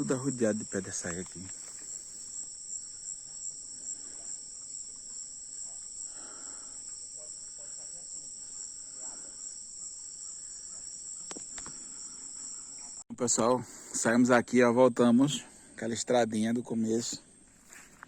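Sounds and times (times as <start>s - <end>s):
insects droning: 0.0s - 18.0s
faint clicks: 11.2s - 11.8s.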